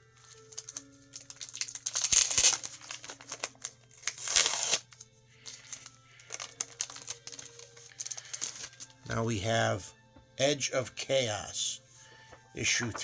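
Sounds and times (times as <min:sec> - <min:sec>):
packaging crinkling and rustling: 0:00.1 - 0:09.0.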